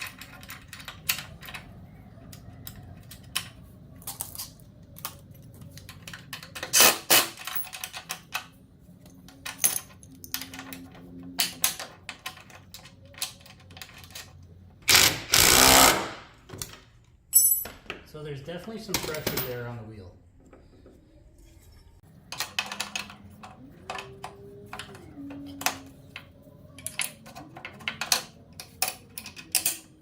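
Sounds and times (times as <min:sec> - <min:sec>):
tools clicking and clanking: 0:00.0 - 0:19.8, 0:22.0 - 0:30.0
cordless power tool driving fasteners: 0:14.8 - 0:16.3.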